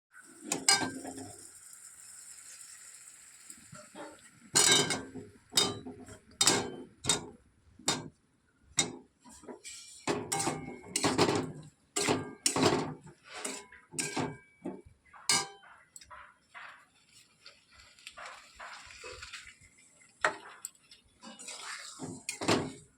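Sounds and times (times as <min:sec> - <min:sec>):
metal utensil clinking on pot: 0:00.5 - 0:01.3, 0:04.6 - 0:08.1, 0:08.8 - 0:16.3, 0:20.3 - 0:22.9.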